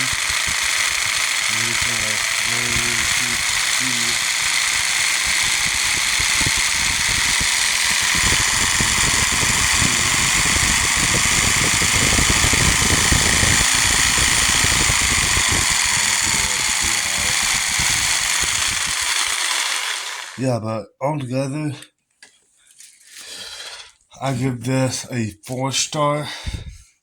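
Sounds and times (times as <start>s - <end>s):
electric jigsaw running: 0.0s - 20.4s.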